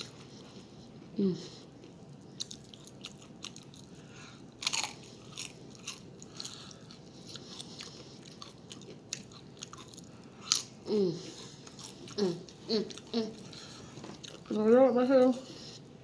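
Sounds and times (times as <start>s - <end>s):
person chewing: 1.5s - 14.5s
food crunches: 4.6s - 10.8s.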